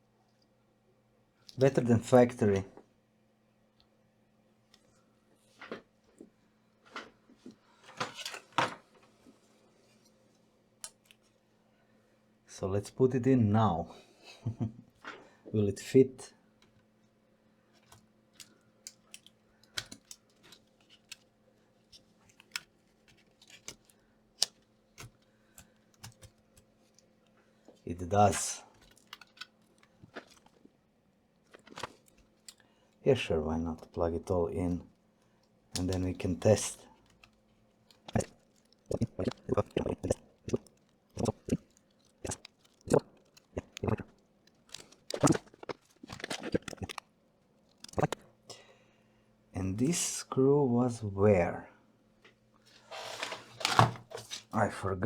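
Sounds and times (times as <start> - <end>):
faint steady hum: 0.0 - 55.0
plastic parts clicking and tapping: 17.8 - 21.3, 21.9 - 27.1, 28.8 - 30.7.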